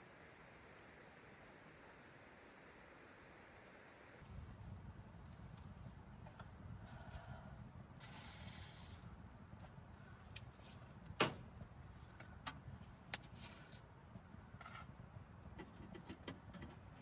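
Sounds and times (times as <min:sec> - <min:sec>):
steady low rumble: 0:04.2 - 0:08.0
wood fire crackling and popping: 0:04.2 - 0:17.0.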